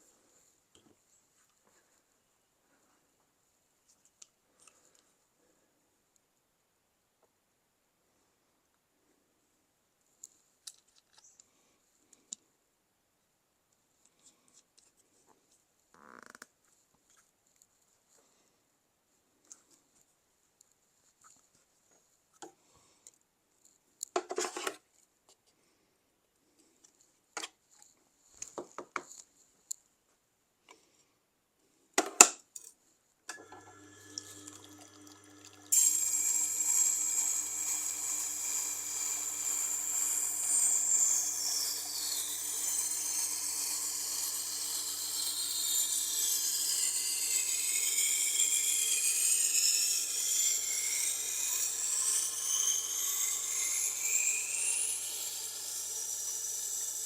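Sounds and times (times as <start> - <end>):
sharpening machine motor hum: 33.3 - 57.0.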